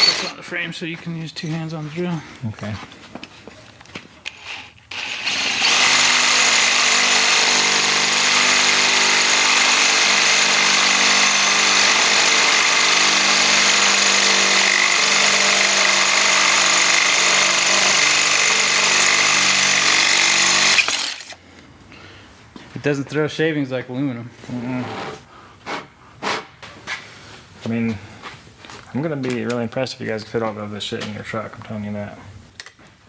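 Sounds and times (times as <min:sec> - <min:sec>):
electric drill boring metal: 0:00.0 - 0:00.4, 0:04.3 - 0:21.4.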